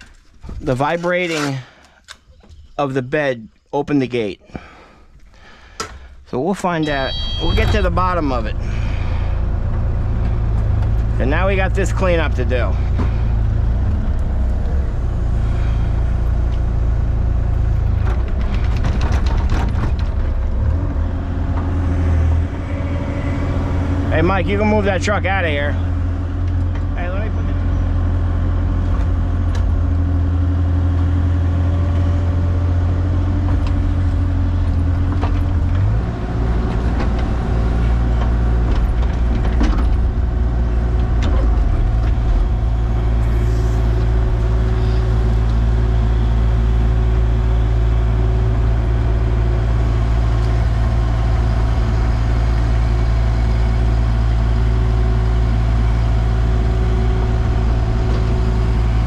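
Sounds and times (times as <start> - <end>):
vehicle engine running: 5.3 - 59.0.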